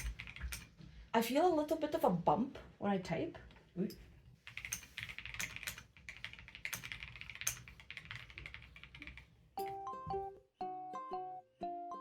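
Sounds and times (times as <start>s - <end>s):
mechanical keyboard typing: 0.0s - 0.7s, 4.4s - 9.7s
ukulele music: 9.6s - 12.0s.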